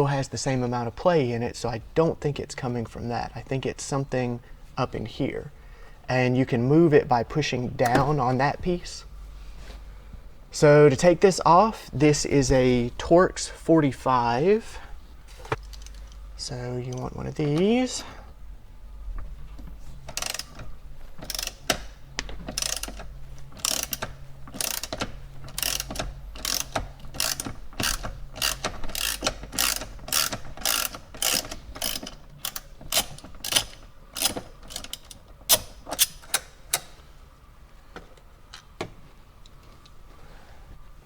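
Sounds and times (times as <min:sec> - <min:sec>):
ratchet wrench ratcheting: 0:15.6 - 0:16.2, 0:20.1 - 0:20.6, 0:21.2 - 0:36.4.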